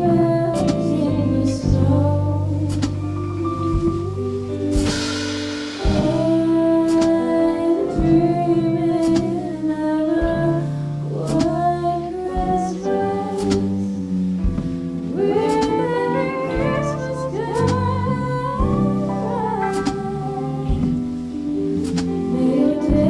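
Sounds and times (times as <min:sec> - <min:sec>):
jazz combo playing: 0:00.0 - 0:23.0
sharp percussive accents: 0:04.7 - 0:07.1.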